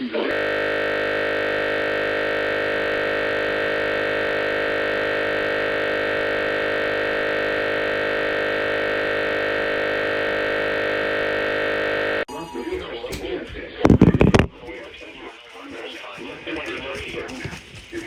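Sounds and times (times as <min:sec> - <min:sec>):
two-tone alert tone: 0:12.3 - 0:14.6.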